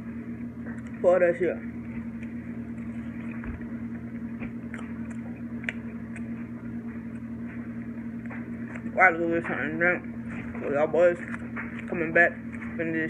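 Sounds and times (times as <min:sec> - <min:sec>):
steady low hum: 0:00.0 - 0:13.0
person chewing food: 0:02.0 - 0:09.0, 0:11.2 - 0:12.8.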